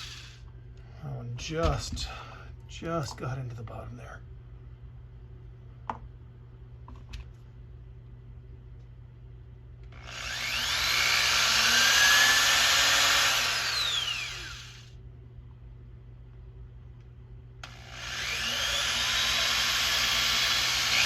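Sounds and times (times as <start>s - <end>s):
power drill whining: 0.0s - 0.4s, 9.9s - 14.9s, 17.6s - 21.0s.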